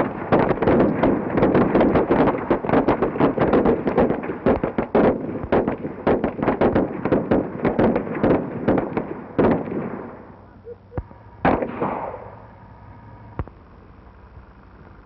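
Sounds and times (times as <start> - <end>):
gunshots: 0.0 - 10.4, 11.0 - 12.4.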